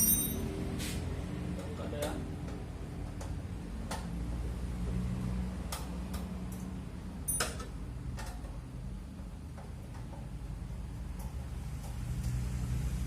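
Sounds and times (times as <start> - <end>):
tool clicks and metal clinks: 0.0 - 0.6, 6.1 - 8.4.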